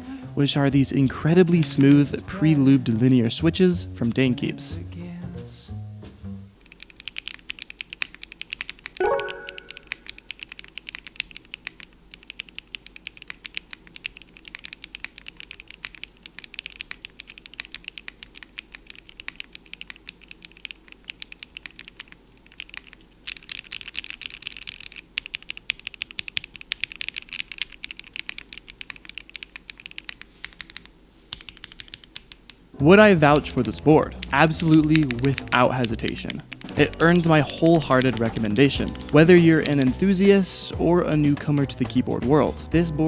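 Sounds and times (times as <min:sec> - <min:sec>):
mechanical keyboard typing: 0:06.6 - 0:32.6, 0:33.2 - 0:40.0
short pitched tone: 0:09.0 - 0:10.0.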